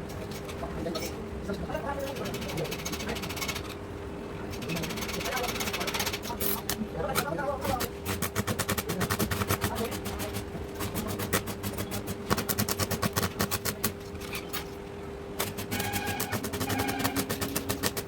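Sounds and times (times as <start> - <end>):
steady hum: 0.0 - 18.0
welding arc crackling and popping: 6.2 - 14.0.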